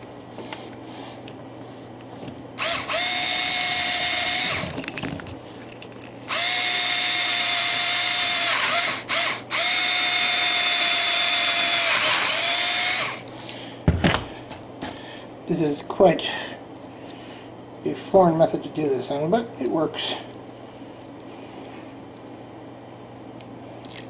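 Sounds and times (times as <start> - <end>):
electric drill drilling plastic: 2.6 - 4.8, 6.3 - 13.2.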